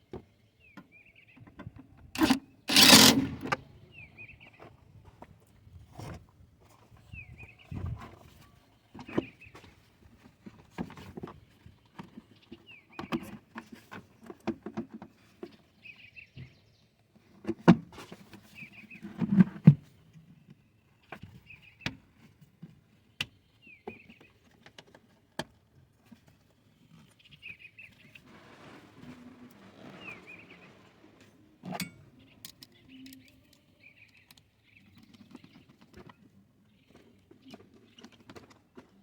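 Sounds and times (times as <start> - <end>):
bird chirping: 29.8 - 31.2, 31.8 - 35.8.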